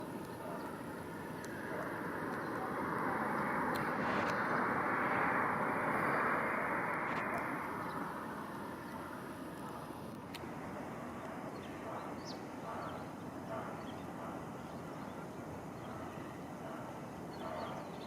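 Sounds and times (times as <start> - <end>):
vehicle passing by: 0.5 - 9.9.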